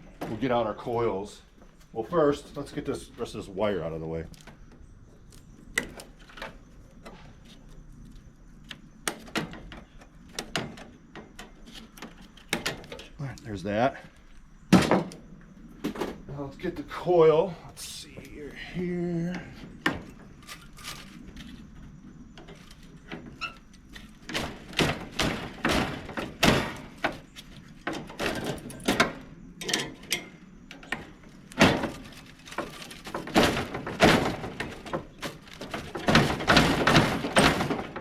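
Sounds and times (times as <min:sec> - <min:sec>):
sheet metal thunks and knocks: 0:14.7 - 0:15.2, 0:24.2 - 0:30.2, 0:30.9 - 0:38.0.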